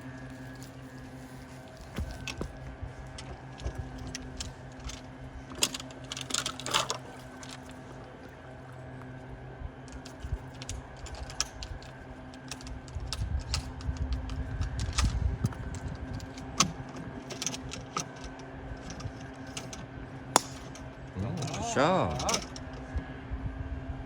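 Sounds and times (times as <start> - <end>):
golf clubs rattling in bag: 0.0 - 8.7, 9.9 - 22.8
electric golf cart humming: 0.0 - 24.0
wind rumble on microphone: 12.6 - 17.9, 22.6 - 24.0.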